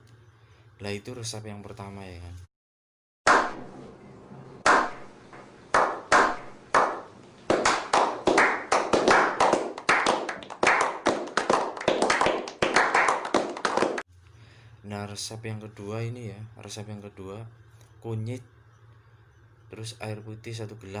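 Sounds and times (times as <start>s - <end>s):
hand claps with ringing echo: 5.8s - 14.1s.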